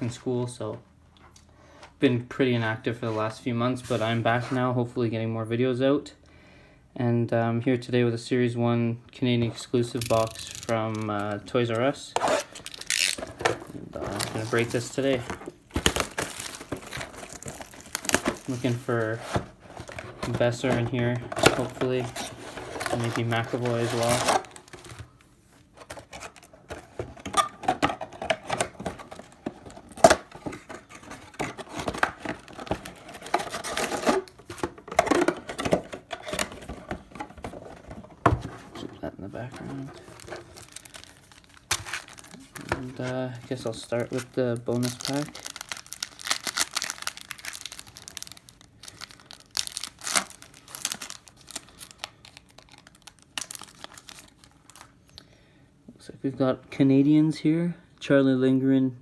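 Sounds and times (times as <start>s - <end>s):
packaging rustling and crinkling: 9.8s - 55.1s.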